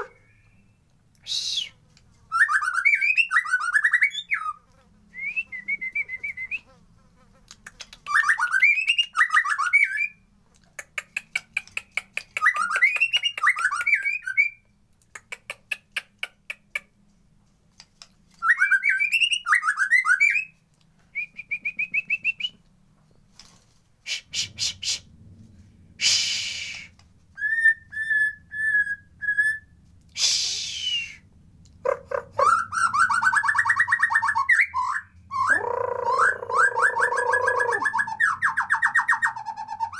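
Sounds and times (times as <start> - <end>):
bird singing varied song: 18.4 - 20.6, 31.8 - 39.9.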